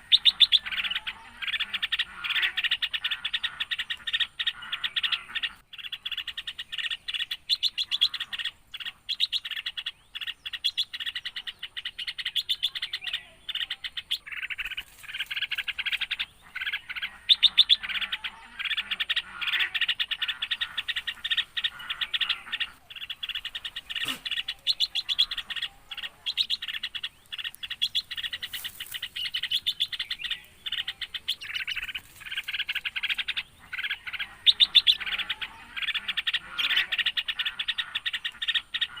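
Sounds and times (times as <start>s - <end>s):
small birds chirping: 0.0s - 39.0s.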